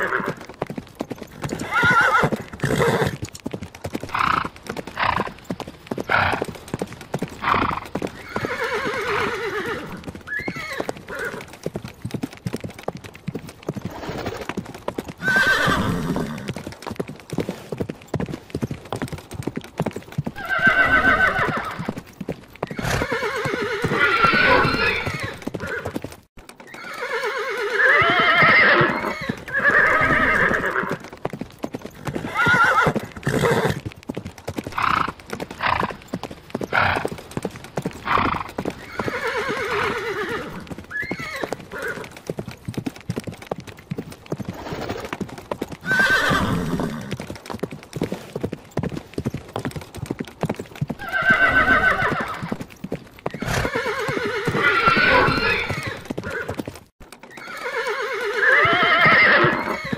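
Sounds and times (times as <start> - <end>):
horses neighing: 0.0 - 3.3, 3.9 - 11.7, 13.6 - 16.7, 20.1 - 33.9, 34.6 - 42.4, 44.3 - 47.3, 50.8 - 59.9
hooves clip-clopping: 0.0 - 59.9.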